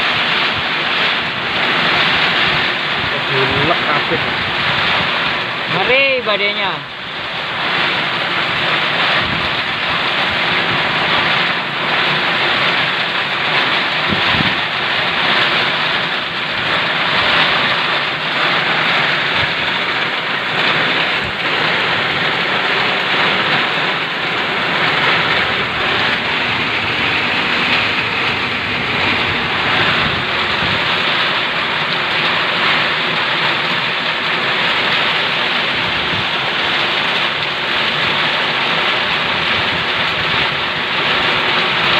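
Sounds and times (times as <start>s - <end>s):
heavy rain hissing: 0.0s - 41.9s
wind buffeting microphone: 7.1s - 11.3s, 13.5s - 32.0s, 35.6s - 37.2s.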